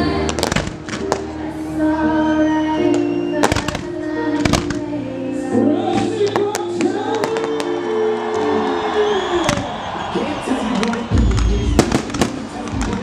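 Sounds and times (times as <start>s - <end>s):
loud music with sustained chords: 0.0s - 8.4s, 11.8s - 13.0s
fireworks bangs: 10.7s - 13.0s.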